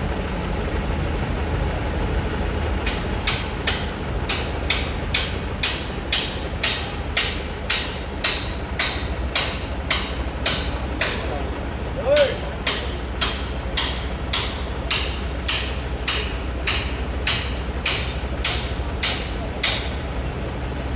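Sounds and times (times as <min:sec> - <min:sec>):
heavy engine running: 0:00.0 - 0:20.9
sharp rhythmic knocks: 0:02.8 - 0:20.2.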